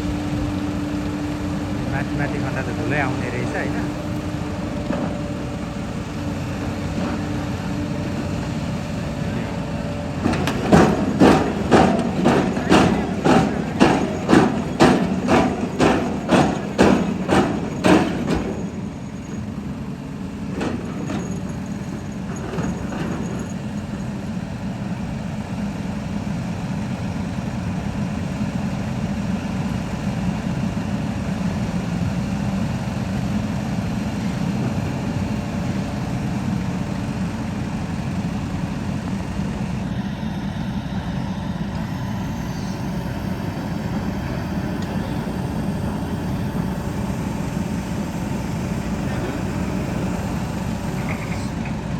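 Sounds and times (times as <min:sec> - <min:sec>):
construction machinery engine hum: 0:00.0 - 0:51.9
hammer blows: 0:10.2 - 0:18.8.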